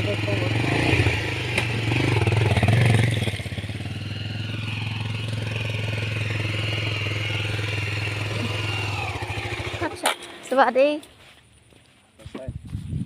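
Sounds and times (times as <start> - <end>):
small motorcycle engine running: 0.0 - 11.1.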